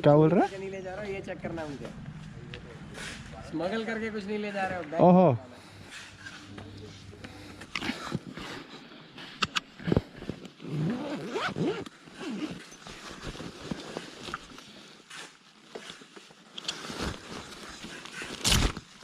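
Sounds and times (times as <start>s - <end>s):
bag zipper: 9.4s - 14.5s.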